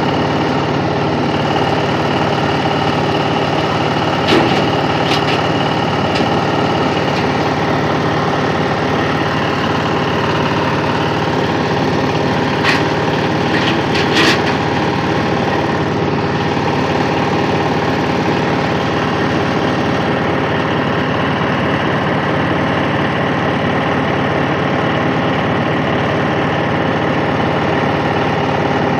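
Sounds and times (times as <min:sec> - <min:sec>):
husking machine engine droning: 0:00.0 - 0:28.9.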